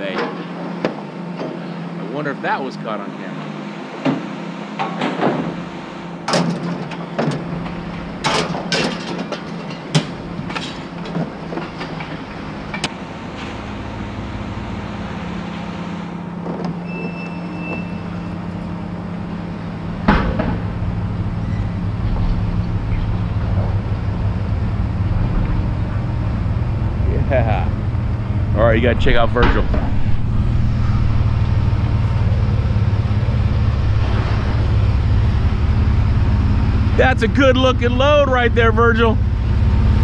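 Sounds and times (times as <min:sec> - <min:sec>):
vehicle engine running: 0:00.0 - 0:40.0
metallic clanks and rattles: 0:06.3 - 0:12.9
low rumble: 0:19.2 - 0:40.0
bang: 0:29.3 - 0:36.3.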